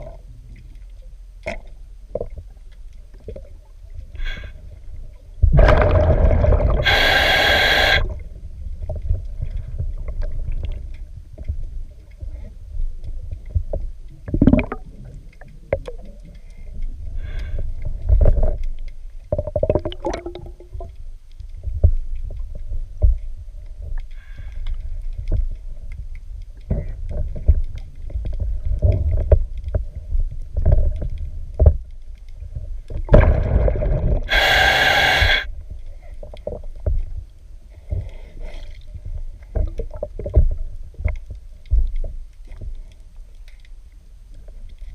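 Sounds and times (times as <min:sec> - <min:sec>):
scuba regulator breath: 0:06.4 - 0:08.2, 0:34.2 - 0:35.5.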